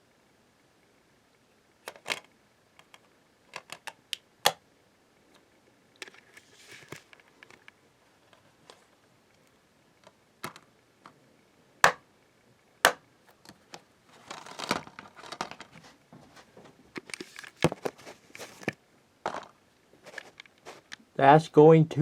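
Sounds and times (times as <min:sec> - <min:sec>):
disc rattling in case: 0:01.9 - 0:04.0, 0:14.2 - 0:15.8.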